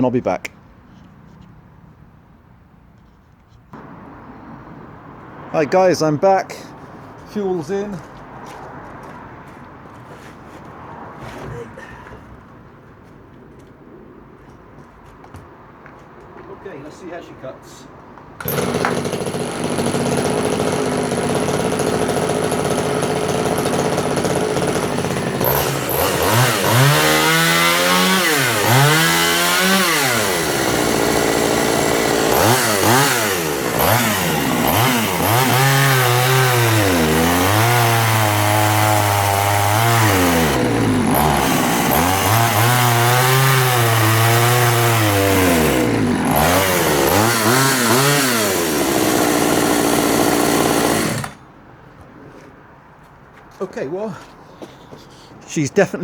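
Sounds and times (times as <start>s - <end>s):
chainsaw cutting wood: 18.4s - 51.5s.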